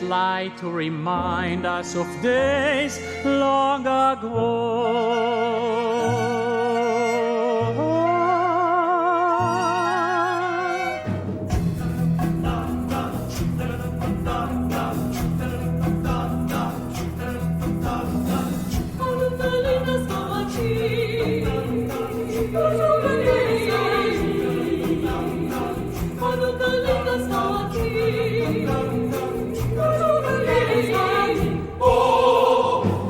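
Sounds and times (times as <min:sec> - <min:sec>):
instrumental accompaniment: 0:10.4 - 0:33.0
choir singing: 0:11.5 - 0:33.0.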